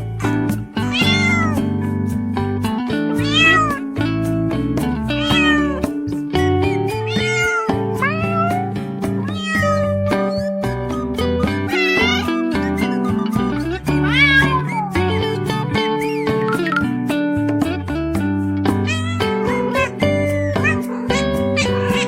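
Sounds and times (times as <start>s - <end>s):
background music with steady beat: 0.0s - 22.0s
cat meowing: 0.2s - 1.6s, 3.2s - 3.8s, 5.2s - 5.9s, 6.5s - 15.2s, 18.8s - 22.0s.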